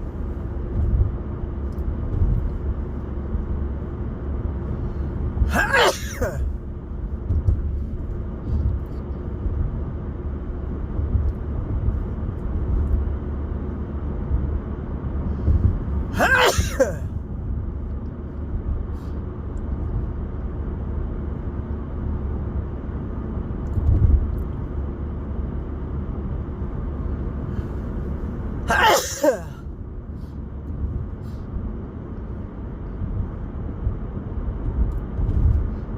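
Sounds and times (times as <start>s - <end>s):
low rumble of car cabin: 0.0s - 35.9s
man sneezing: 5.5s - 6.5s, 16.1s - 17.2s, 28.7s - 29.6s.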